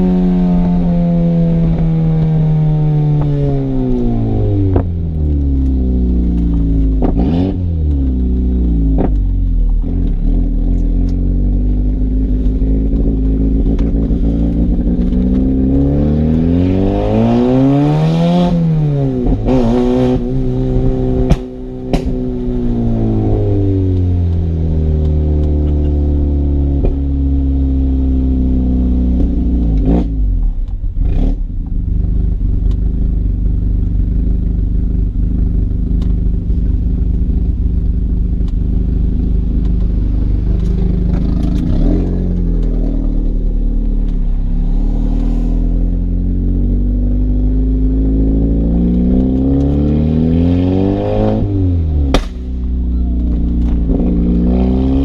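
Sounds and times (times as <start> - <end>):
car engine revving: 0.0 - 55.0.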